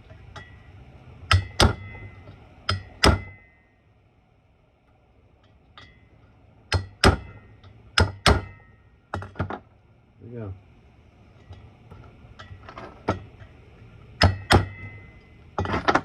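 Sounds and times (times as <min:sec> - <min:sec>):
hammer striking metal: 0:01.3 - 0:03.6, 0:06.7 - 0:09.5, 0:14.2 - 0:16.0.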